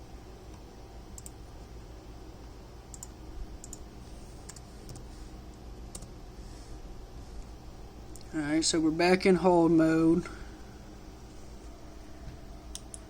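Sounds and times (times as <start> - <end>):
low steady hum: 0.0 - 13.0
computer mouse clicks: 1.2 - 1.4, 2.9 - 3.8, 5.9 - 6.1, 12.7 - 13.0.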